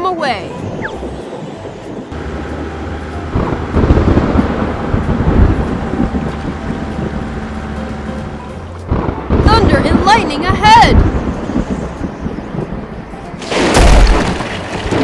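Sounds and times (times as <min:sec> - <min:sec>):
truck engine humming: 0:00.0 - 0:13.4
rough engine rumble: 0:00.7 - 0:10.4.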